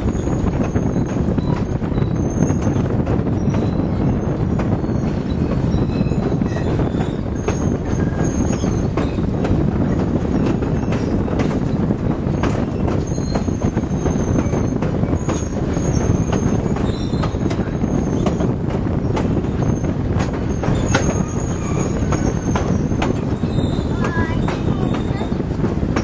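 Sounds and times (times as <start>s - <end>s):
high-pitched wheel squeals: 0.0s - 9.3s, 10.3s - 18.5s, 20.5s - 25.4s
train wheels rumbling on rail: 0.0s - 26.0s
wheel clicks on rail: 0.0s - 26.0s.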